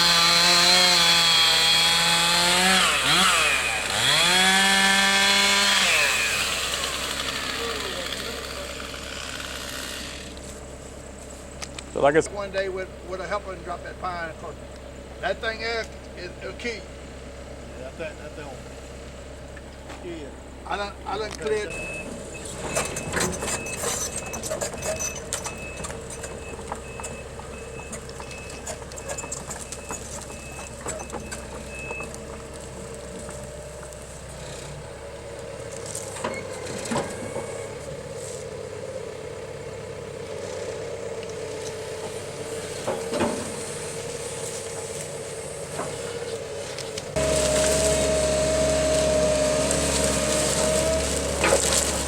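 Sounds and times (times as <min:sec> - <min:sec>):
heavy machine engine running: 0:00.0 - 0:15.4, 0:21.6 - 0:52.0
backup alarm beeping: 0:21.7 - 0:32.4
knocks and clanks: 0:22.5 - 0:33.9.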